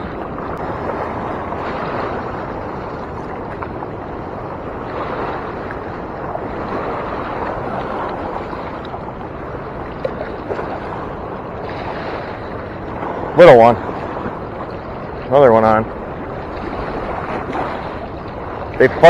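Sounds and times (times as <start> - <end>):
river current rushing: 0.0 - 19.0.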